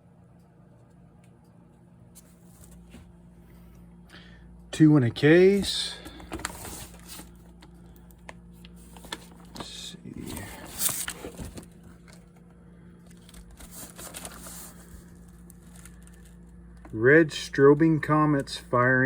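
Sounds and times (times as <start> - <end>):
packaging crinkling and rustling: 6.0 - 12.4, 13.0 - 16.6.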